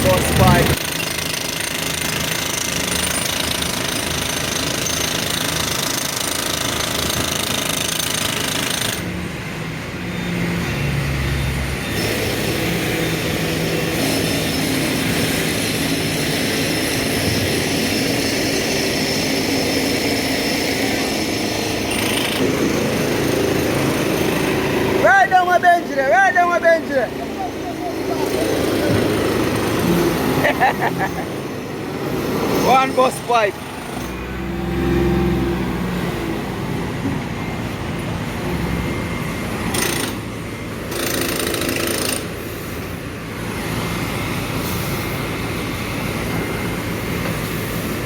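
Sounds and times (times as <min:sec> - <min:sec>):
construction machinery hammering rattle: 0:00.0 - 0:09.2, 0:11.9 - 0:34.6, 0:36.8 - 0:48.0.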